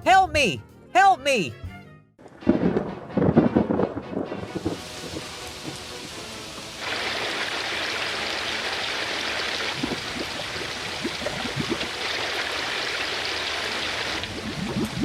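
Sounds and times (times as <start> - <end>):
water rushing: 4.6 - 15.0.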